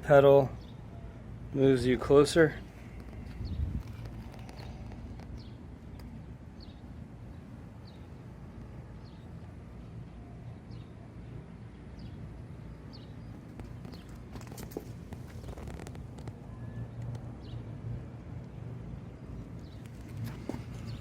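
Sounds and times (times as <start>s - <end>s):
low outdoor rumble: 0.0s - 21.0s
bird chirping: 19.3s - 21.0s.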